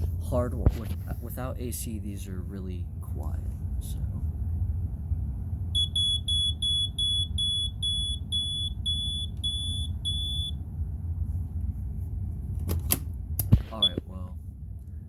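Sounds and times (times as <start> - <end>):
smoke alarm high-pitched beeps: 5.8 - 10.6, 13.7 - 14.1.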